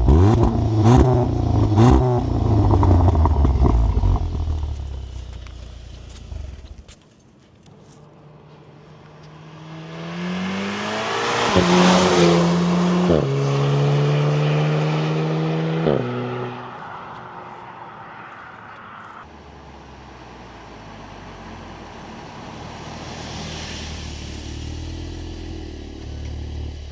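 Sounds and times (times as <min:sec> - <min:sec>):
car accelerating past: 0:08.1 - 0:26.9.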